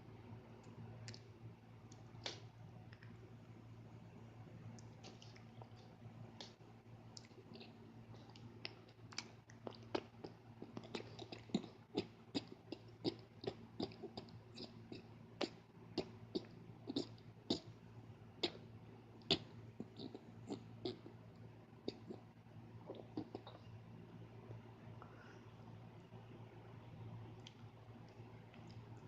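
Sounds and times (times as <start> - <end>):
person making sharp clicks and smacks: 1.9 - 3.2, 4.7 - 17.7.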